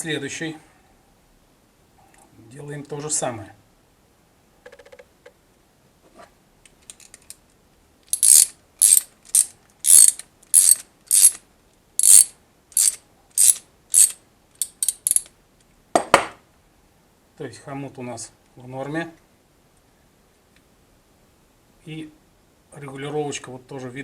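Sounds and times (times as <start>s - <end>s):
faint ratchet clicks: 6.6s - 11.4s, 12.0s - 15.3s
ratchet wrench ratcheting: 8.1s - 11.4s, 12.0s - 15.3s.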